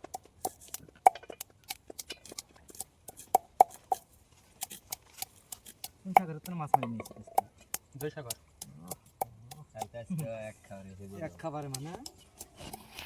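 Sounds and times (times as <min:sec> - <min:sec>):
knife chopping on cutting board: 0:04.6 - 0:09.9.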